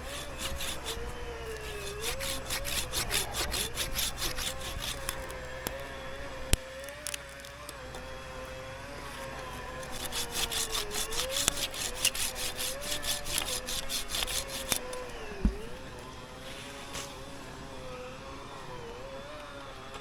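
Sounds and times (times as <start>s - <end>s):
hand saw cutting wood: 0.0s - 5.8s, 9.5s - 15.8s.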